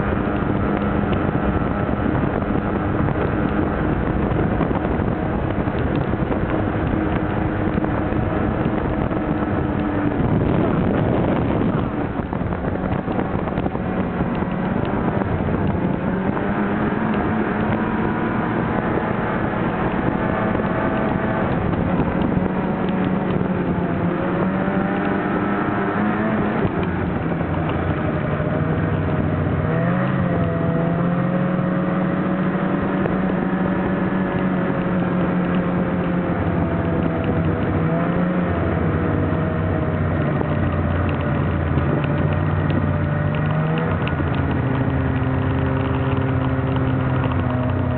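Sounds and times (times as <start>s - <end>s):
snowmobile engine running: 0.0s - 47.9s.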